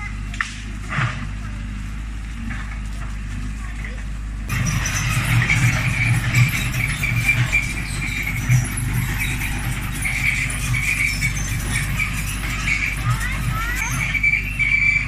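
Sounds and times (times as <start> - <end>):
diesel engine running: 0.0 - 15.0
metallic rattling: 4.5 - 15.0.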